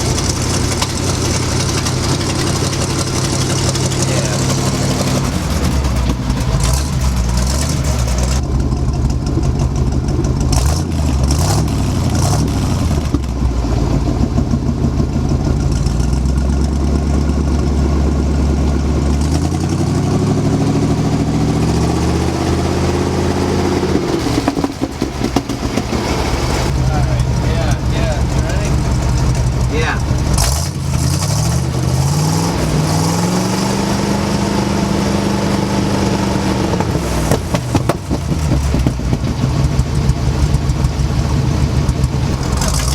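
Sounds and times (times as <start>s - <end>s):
truck engine revving: 0.0s - 42.9s.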